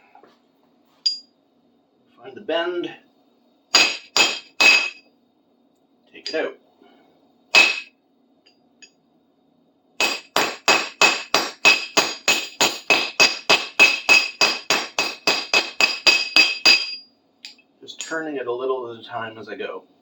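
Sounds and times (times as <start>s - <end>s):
hammer striking steel: 3.7s - 5.0s, 7.6s - 7.9s, 10.0s - 17.6s.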